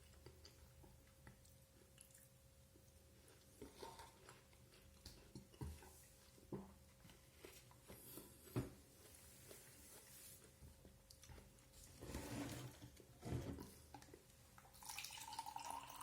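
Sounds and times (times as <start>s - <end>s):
chewing: 0.0s - 12.0s.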